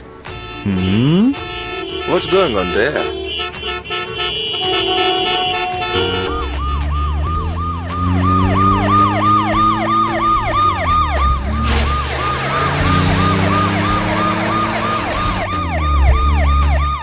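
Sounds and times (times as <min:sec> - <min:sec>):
cartoon siren yelping: 0:07.8 - 0:17.0
hissing rush: 0:11.2 - 0:15.5.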